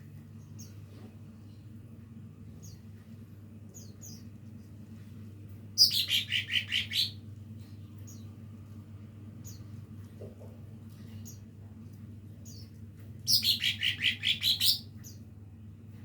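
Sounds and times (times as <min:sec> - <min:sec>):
low steady hum: 0:00.0 - 0:16.0
bird chirping: 0:05.8 - 0:07.2, 0:12.4 - 0:15.2.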